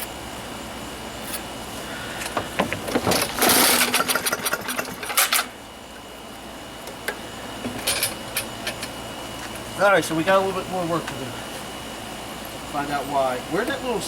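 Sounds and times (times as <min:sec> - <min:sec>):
lawnmower engine sputtering: 0:01.9 - 0:05.5.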